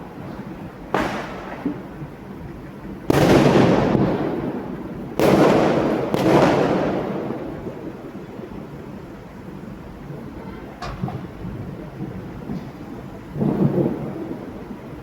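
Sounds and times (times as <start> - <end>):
echoing rumble: 0.0 - 9.3
fireworks bangs: 0.0 - 9.4.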